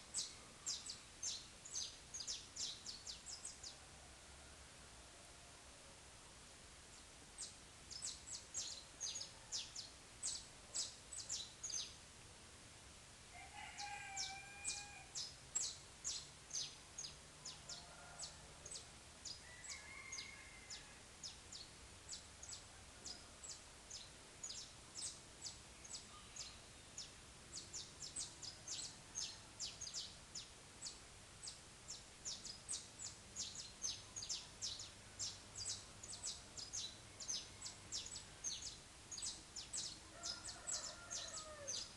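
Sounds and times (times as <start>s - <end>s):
lower drawn-out bird call: 13.4s - 15.3s.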